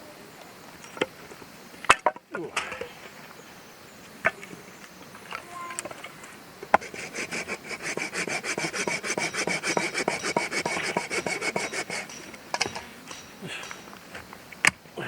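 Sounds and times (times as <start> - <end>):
hand saw cutting wood: 6.8 - 13.8
sharp knock: 8.6 - 13.9.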